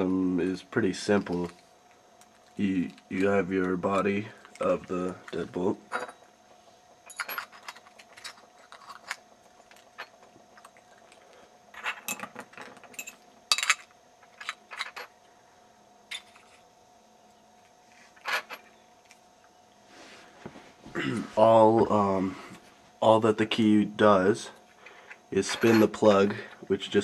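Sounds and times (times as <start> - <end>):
metal parts clicking and clinking: 7.1 - 15.2, 16.1 - 16.6, 18.2 - 18.7, 25.0 - 26.7.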